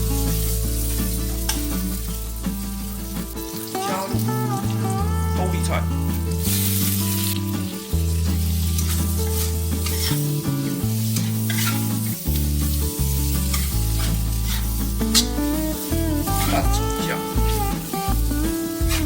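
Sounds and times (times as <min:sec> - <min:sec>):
cabbage sizzling in a pan: 0:00.0 - 0:19.0
soft background music: 0:00.0 - 0:19.0
spatula scraping a pan: 0:08.4 - 0:15.4.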